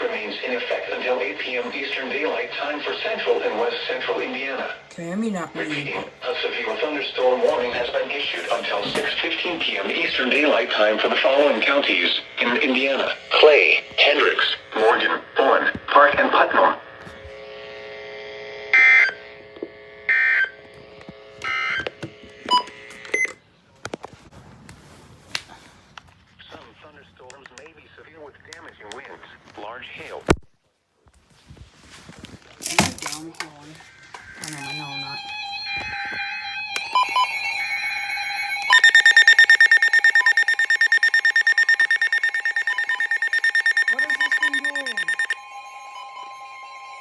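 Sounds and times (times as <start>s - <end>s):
brief beeps: 36.8s - 37.4s, 38.6s - 47.0s
warbling data bursts: 37.0s - 47.0s.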